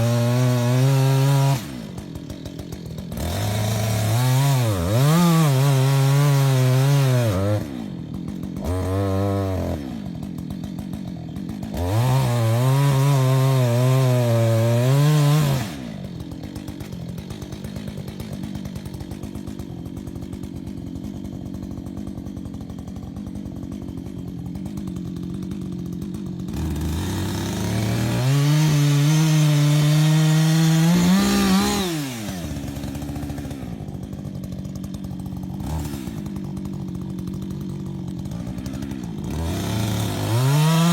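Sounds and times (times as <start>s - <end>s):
chainsaw revving and idling: 0.0s - 40.9s.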